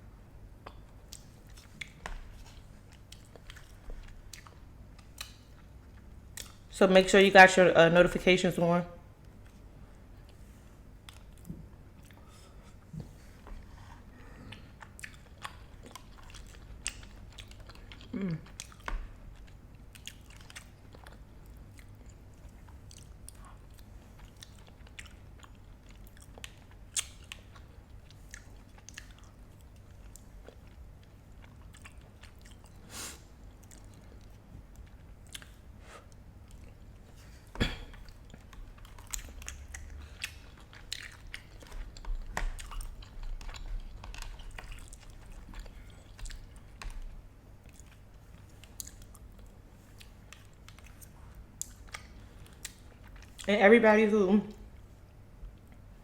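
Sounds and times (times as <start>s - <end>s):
person chewing food: 0.4s - 6.7s, 9.2s - 53.5s.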